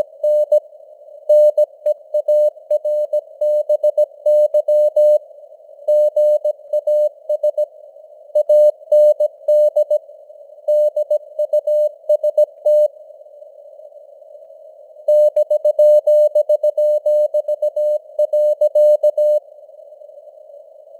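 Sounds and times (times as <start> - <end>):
morse code tone: 0.0 - 0.6, 15.1 - 19.4.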